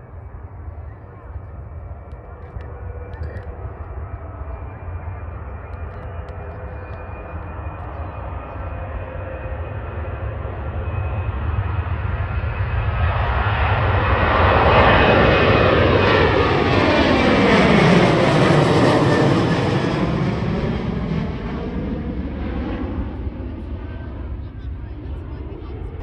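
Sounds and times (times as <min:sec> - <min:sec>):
jet airliner passing: 0:00.0 - 0:26.0.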